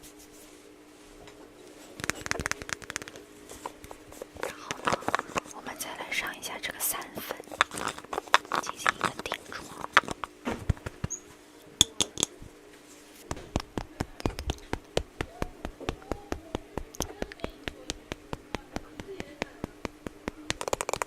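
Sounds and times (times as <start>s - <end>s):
makeup applicator tapping: 11.8s - 12.3s, 13.3s - 21.0s.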